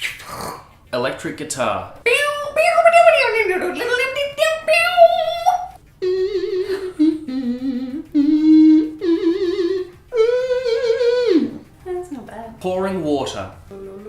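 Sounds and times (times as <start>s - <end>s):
person imitating electric guitar vocally: 4.3s - 11.7s.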